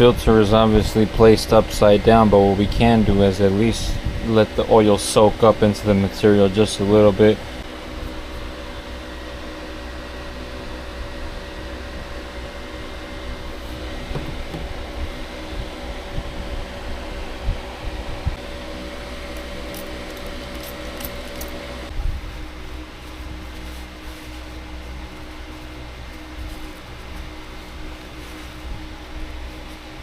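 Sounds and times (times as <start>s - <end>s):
steady mechanical hum: 0.0s - 30.0s
soft knocks and clicks: 14.1s - 14.7s.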